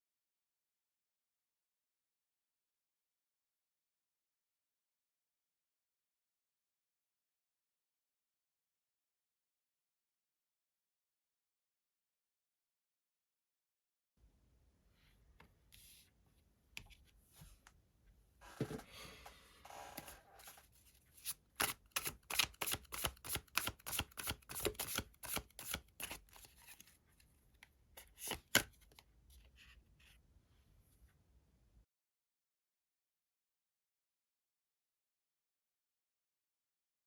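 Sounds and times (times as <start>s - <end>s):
cards rustling and sliding: 19.6s - 27.0s, 28.0s - 29.0s.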